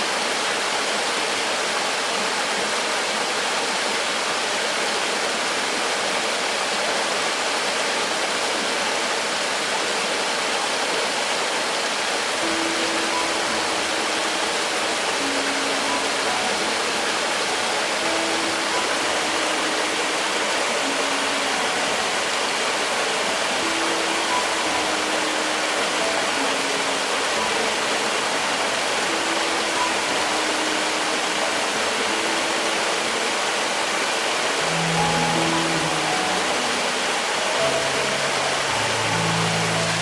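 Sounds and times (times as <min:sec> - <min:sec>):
stream rushing over rocks: 0:00.0 - 0:40.0
soft sustained musical notes: 0:10.9 - 0:40.0.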